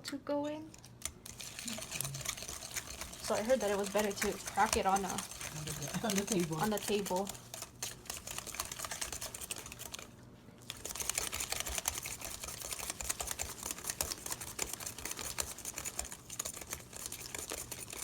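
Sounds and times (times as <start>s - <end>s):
wire whisk clicking in a bowl: 1.0s - 10.0s.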